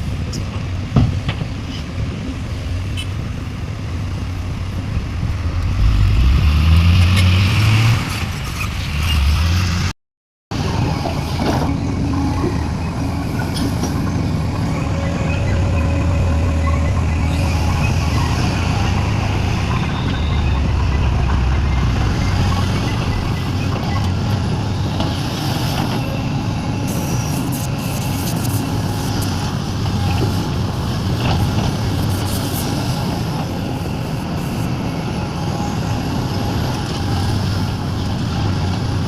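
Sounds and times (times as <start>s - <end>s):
heavy diesel engines running: 10.5s - 39.0s.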